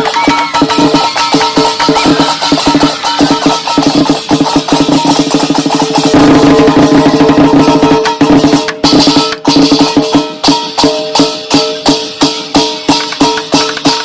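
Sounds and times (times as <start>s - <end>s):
held musical notes: 0.0s - 5.3s
fast rattling percussion: 0.0s - 14.0s.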